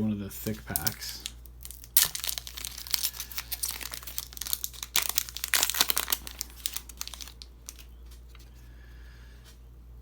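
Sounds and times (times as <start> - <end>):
wrapper tearing and crinkling: 0.4 - 7.9.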